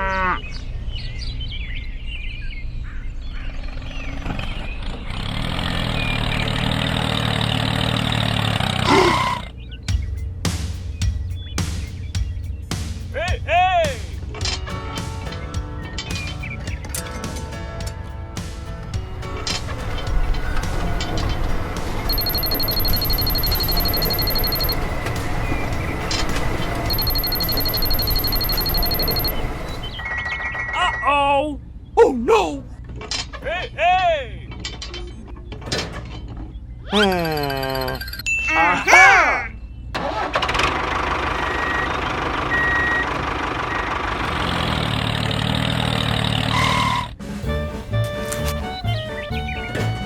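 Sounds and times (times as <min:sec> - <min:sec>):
vehicle engine rumbling: 0:13.6 - 0:30.8, 0:40.1 - 0:50.0
mechanical din: 0:19.0 - 0:30.8
rapid electronic alarm beeping: 0:20.5 - 0:31.1, 0:37.2 - 0:38.3.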